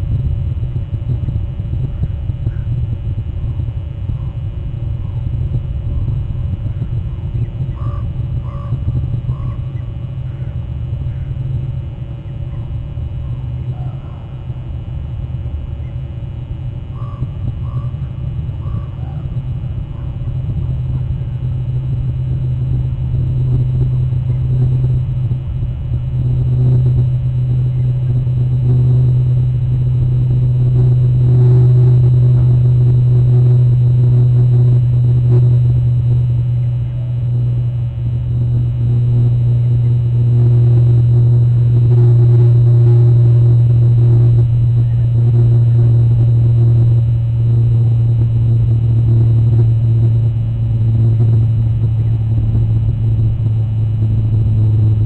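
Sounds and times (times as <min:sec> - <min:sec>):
steady low rumble: 0:00.0 - 0:55.0
crow cawing: 0:07.7 - 0:09.6, 0:17.0 - 0:17.9.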